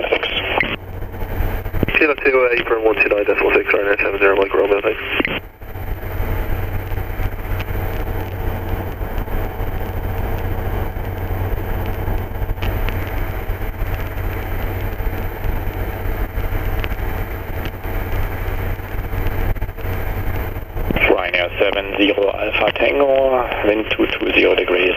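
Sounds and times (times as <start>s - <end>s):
aircraft engine and propeller drone: 0.0s - 24.9s.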